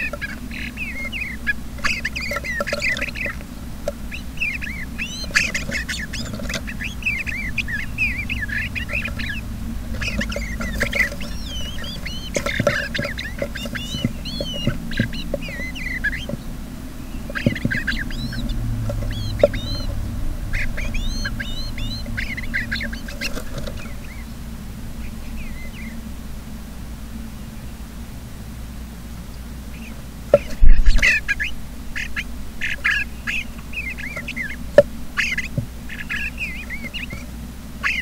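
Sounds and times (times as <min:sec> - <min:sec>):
birds chirping: 0:00.0 - 0:38.0
steady low hum: 0:00.0 - 0:38.0.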